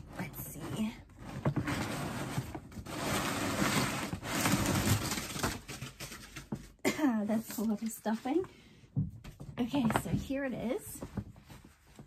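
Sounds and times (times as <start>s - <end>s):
packing stuffing rustling: 1.3s - 6.6s.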